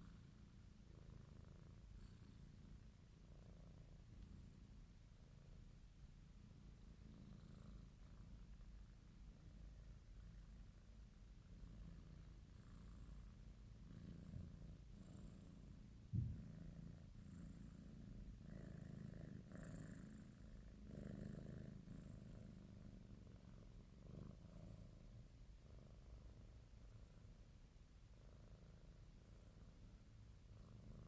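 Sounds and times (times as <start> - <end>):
cat purring: 0.0 - 31.0
brief thump: 16.1 - 16.5.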